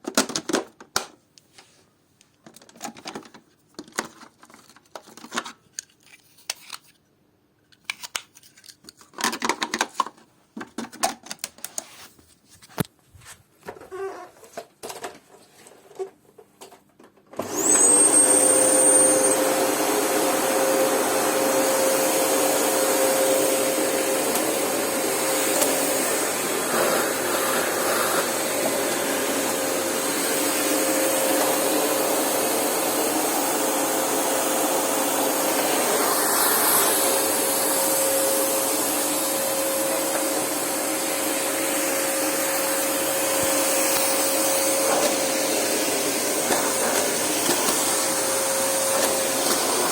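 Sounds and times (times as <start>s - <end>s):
vacuum cleaner running: 17.4s - 49.9s.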